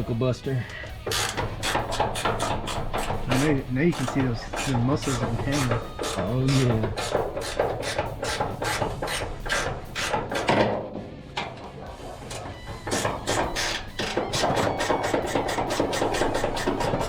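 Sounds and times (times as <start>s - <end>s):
ratchet wrench clicking: 1.0s - 10.5s, 12.3s - 17.0s.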